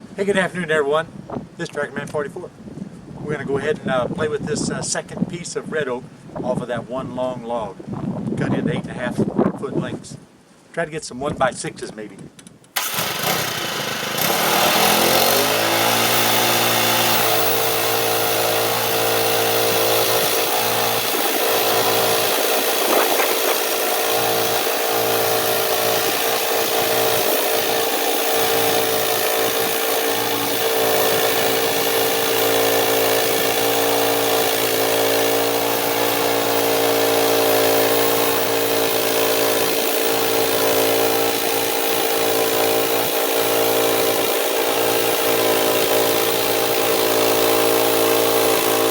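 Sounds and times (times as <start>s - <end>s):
band blade sawing log: 12.8s - 48.9s
bandsaw mill engine running: 12.8s - 48.9s.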